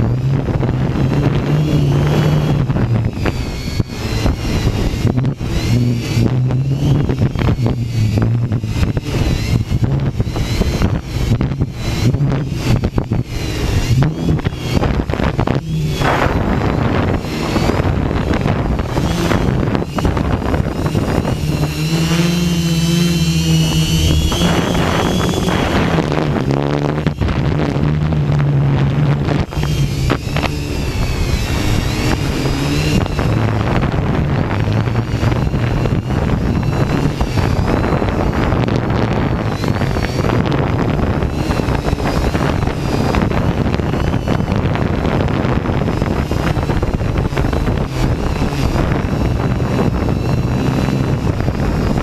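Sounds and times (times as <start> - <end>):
drone motors whining: 0.0 - 52.0
wind buffeting microphone: 0.0 - 52.0.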